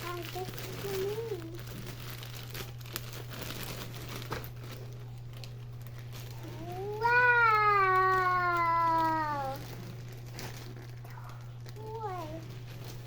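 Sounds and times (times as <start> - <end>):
child's drawn-out woooow: 6.7 - 9.6.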